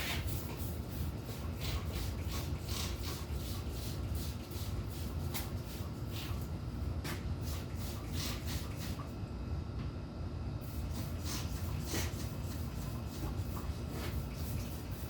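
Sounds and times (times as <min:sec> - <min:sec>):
scrubbing strokes: 0:00.0 - 0:06.5, 0:10.8 - 0:15.0.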